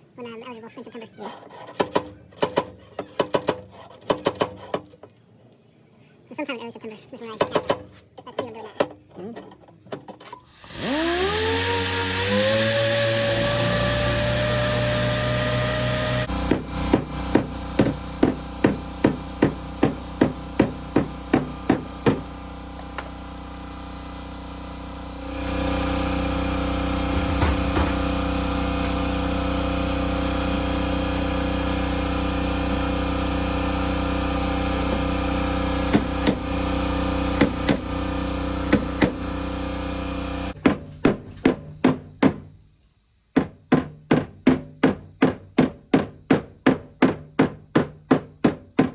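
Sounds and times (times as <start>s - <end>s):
power tool whining: 10.5s - 40.6s
sharp knocks: 16.4s - 22.2s, 27.1s - 28.2s.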